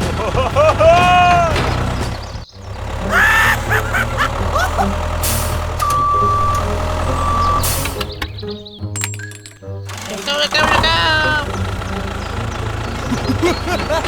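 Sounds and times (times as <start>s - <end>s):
vehicle engine rumbling: 0.0s - 14.0s
long high beep: 5.8s - 7.7s.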